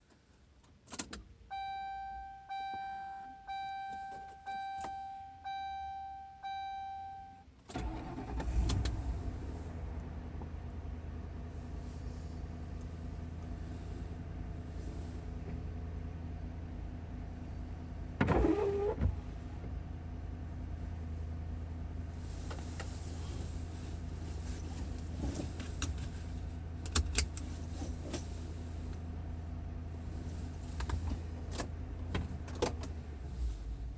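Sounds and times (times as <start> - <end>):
car engine cranking and idling: 0.1 - 33.9
dashboard warning chime: 1.5 - 8.3.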